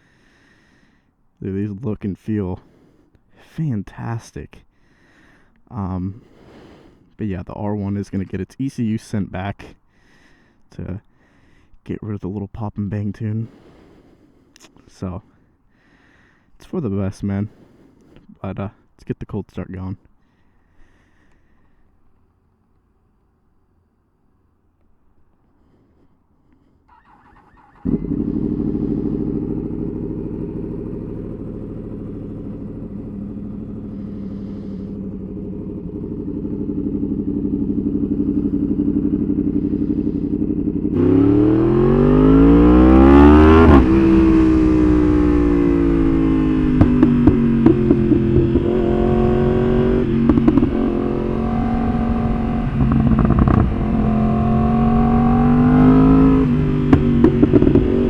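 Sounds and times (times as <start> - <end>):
motorcycle engine starting and revving: 26.9 - 58.0
exhaust pops and crackles: 27.8 - 58.0.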